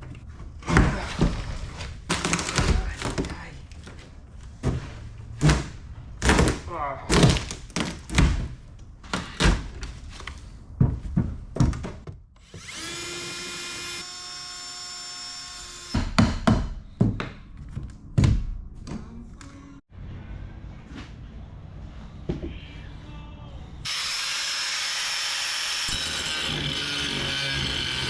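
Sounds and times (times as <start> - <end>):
power tool whine: 12.4 - 16.0, 23.9 - 28.0.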